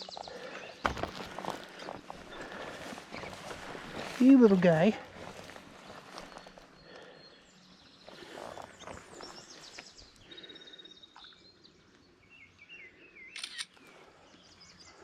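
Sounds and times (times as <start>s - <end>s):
songbirds singing faintly: 0.0s - 15.0s
camera shutter click: 13.4s - 13.8s.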